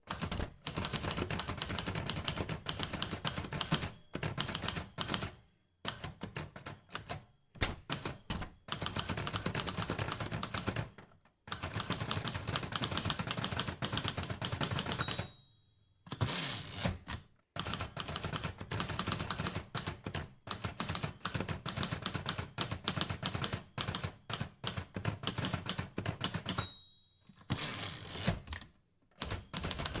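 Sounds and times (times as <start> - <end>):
typewriter carriage return: 0.1 - 5.2, 5.9 - 15.4, 16.1 - 26.7, 27.3 - 30.0
typewriter bell ring: 2.0 - 5.2, 11.8 - 16.8, 26.2 - 28.3, 29.2 - 30.0
typewriter key strikes: 29.2 - 30.0.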